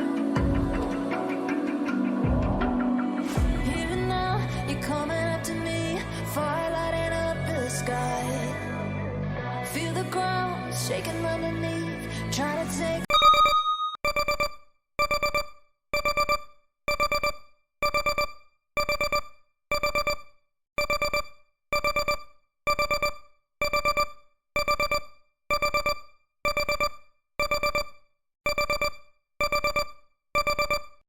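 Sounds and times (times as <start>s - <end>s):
countdown timer alarm beeping: 13.1s - 31.0s.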